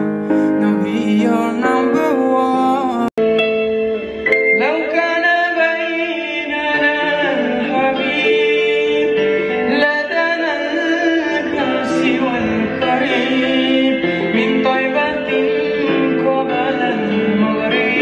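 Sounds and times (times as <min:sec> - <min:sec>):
sustained instrumental chords: 0:00.0 - 0:06.4
person singing wordless melody: 0:00.0 - 0:18.0.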